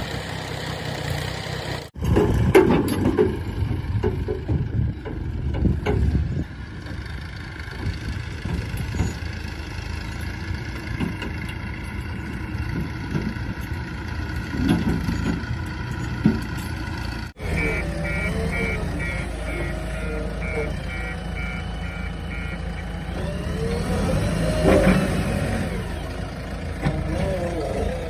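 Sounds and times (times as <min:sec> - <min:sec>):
diesel engine running: 0:00.0 - 0:28.0
reversing alarm beeping: 0:17.4 - 0:23.8.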